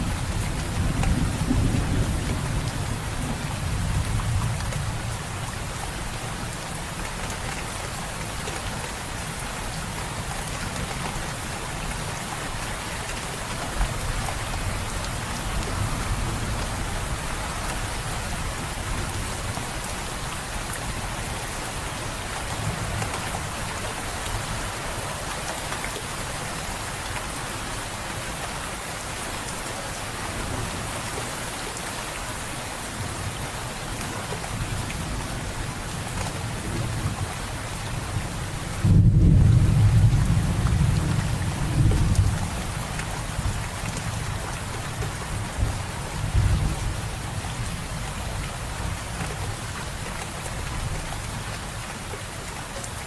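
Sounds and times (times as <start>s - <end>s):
steady rain falling: 0.0s - 53.0s
low thunder rumble: 38.6s - 42.6s.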